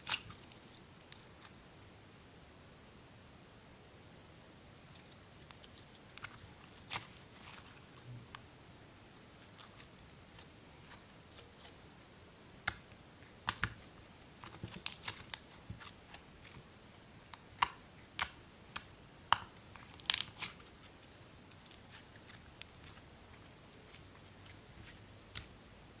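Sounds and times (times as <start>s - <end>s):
slime clicking and popping: 0.0s - 1.3s, 12.6s - 13.8s, 14.4s - 16.6s, 17.3s - 20.6s.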